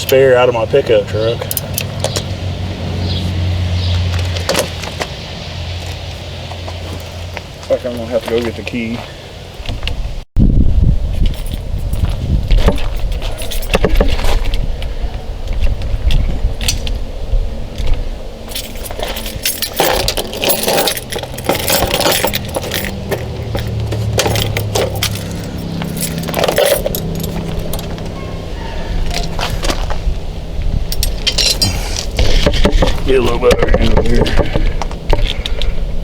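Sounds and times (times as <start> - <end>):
keys jangling: 12.8 - 14.3, 18.5 - 28.0, 30.9 - 32.2.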